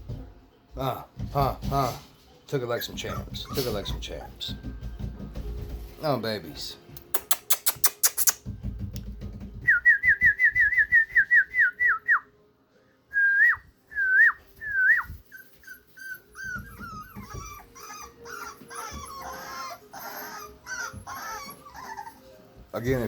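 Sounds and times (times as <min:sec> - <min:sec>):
puppies whining: 0:02.7 - 0:05.4, 0:14.5 - 0:23.0
puppies whimpering: 0:02.8 - 0:04.8, 0:14.8 - 0:23.0
puppies yelping: 0:03.0 - 0:04.6, 0:15.2 - 0:22.3.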